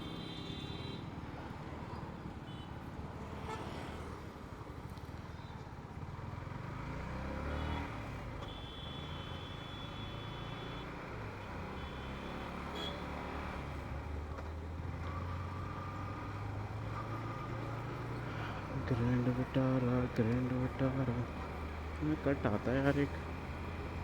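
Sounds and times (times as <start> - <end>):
road and traffic noise: 0.0 - 24.0
vehicle horn honking: 8.4 - 10.9, 11.7 - 13.1.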